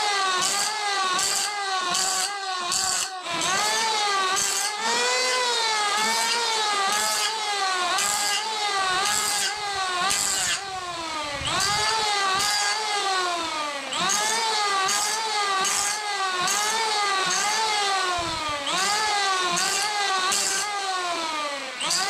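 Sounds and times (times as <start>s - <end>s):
power tool motor whining: 0.0s - 22.0s.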